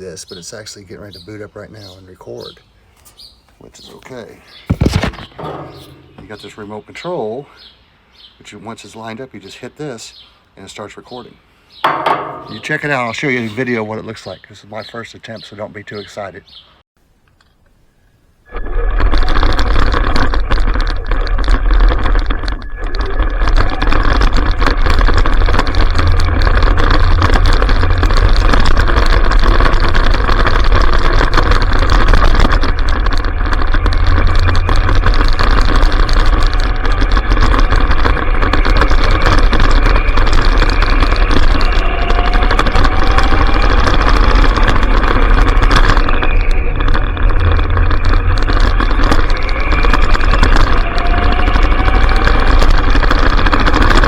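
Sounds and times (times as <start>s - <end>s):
rc truck jolting and motor noise: 18.5s - 54.0s.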